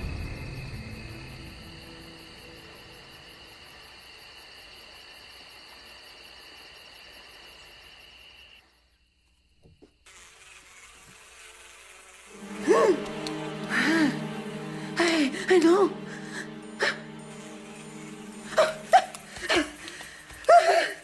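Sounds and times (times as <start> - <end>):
low hiss: 10.1 - 20.0
high-pitched insect chirring: 16.1 - 20.0.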